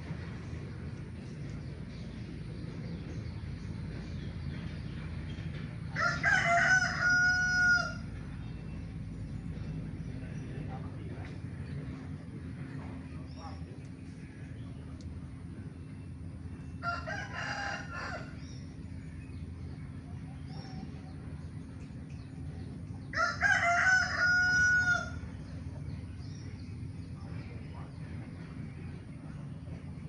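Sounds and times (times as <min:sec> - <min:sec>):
rooster crowing: 0:05.9 - 0:08.0, 0:16.8 - 0:18.4, 0:23.1 - 0:25.2.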